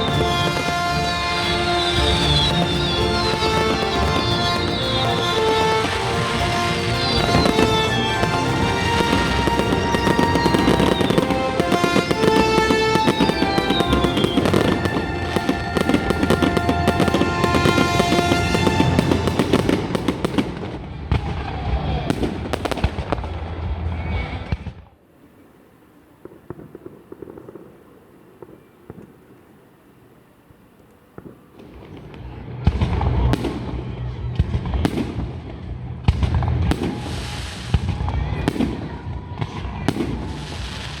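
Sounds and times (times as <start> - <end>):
music playing: 0.0 - 20.7
faint distant pops: 0.0 - 20.8, 25.2 - 33.7
fireworks bursting: 0.0 - 23.5, 24.5 - 41.0.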